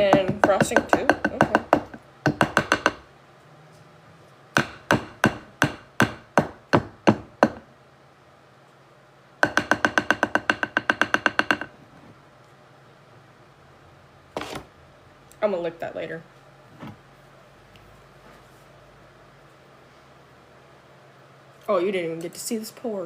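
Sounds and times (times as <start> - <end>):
utensil tapping metal bowl: 0.0 - 3.0, 9.4 - 11.7.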